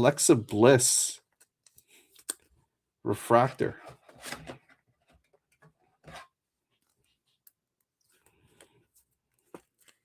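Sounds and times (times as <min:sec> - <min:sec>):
soft rustle of packaging: 0:05.0 - 0:10.0.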